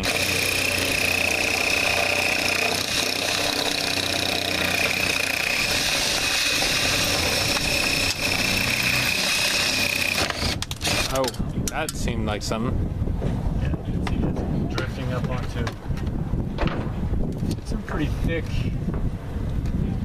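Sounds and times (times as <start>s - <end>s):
power drill boring into wall: 0.0s - 11.3s.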